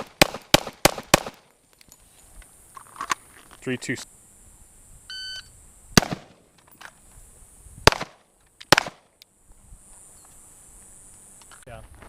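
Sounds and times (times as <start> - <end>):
gunshots: 0.0 - 1.4, 6.0 - 6.4, 7.8 - 9.1
shot timer beep: 5.1 - 5.5.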